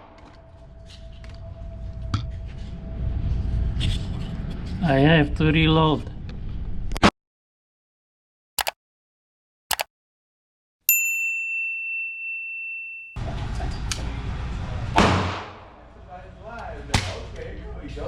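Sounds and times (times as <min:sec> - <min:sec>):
high ringing ding: 0:10.9 - 0:13.2.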